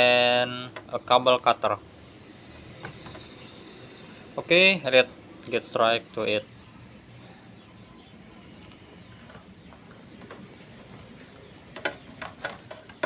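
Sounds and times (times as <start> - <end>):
tools and cable clicking: 8.5 - 8.9.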